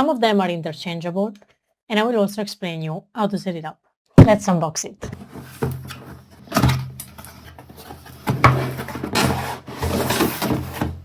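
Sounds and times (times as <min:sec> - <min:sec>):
cardboard box rubbing and scraping: 0:07.7 - 0:11.0.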